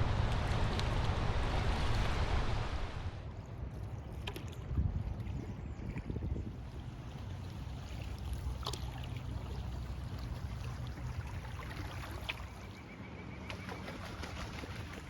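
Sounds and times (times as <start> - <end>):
river water flowing: 0.0 - 3.4
wind rumbling on microphone: 0.0 - 8.6.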